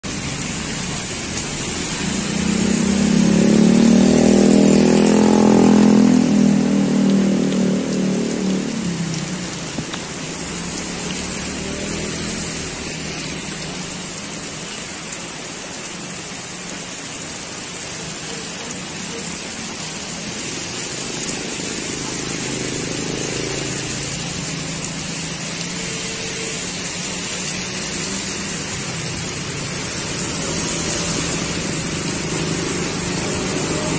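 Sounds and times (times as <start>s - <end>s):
heavy rain pouring: 0.0s - 33.9s
vehicle passing by: 0.1s - 9.7s, 10.3s - 14.2s, 20.5s - 33.9s.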